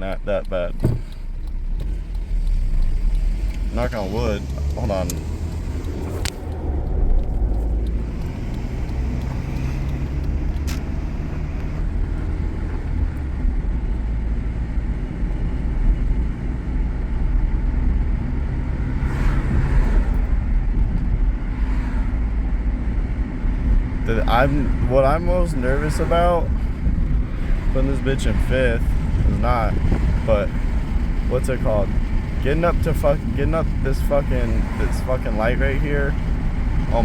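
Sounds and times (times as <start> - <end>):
car engine with rod knock: 0.0 - 13.9
road noise inside car: 0.0 - 37.0
sharp click: 4.3 - 12.0.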